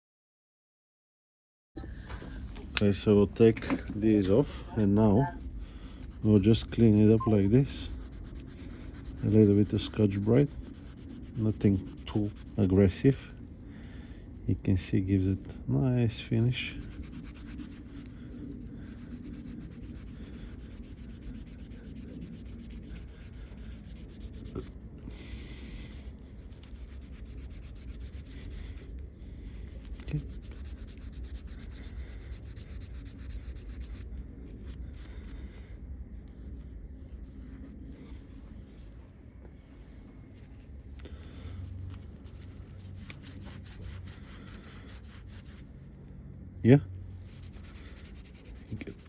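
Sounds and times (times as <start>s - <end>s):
steady low hum: 1.8s - 49.0s
abrasive pad scrubbing metal: 4.0s - 13.4s, 16.1s - 37.9s, 42.0s - 45.7s, 47.2s - 49.0s.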